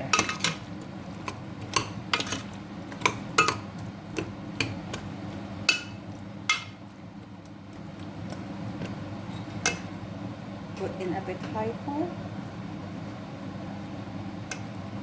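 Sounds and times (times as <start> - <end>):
utensil clinking against pot: 0.0 - 0.6, 1.2 - 4.8.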